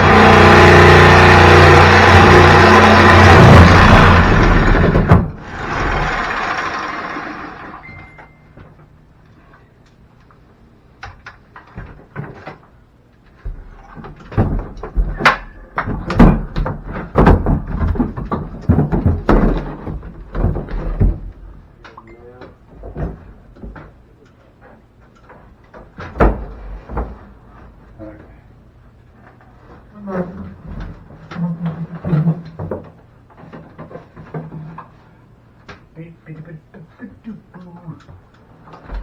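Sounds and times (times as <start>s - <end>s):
loud rushing noise: 0.0s - 6.9s
wooden ladder knocking and clunking: 3.1s - 5.4s, 11.1s - 21.6s, 22.5s - 24.0s, 25.2s - 27.4s.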